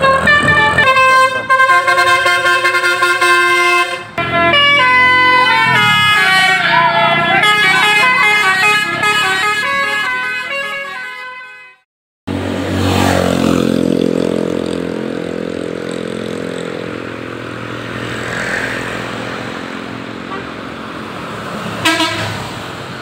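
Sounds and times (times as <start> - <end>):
bus multi-tone horn melody: 0.0 - 11.9, 20.2 - 20.8, 21.8 - 22.6.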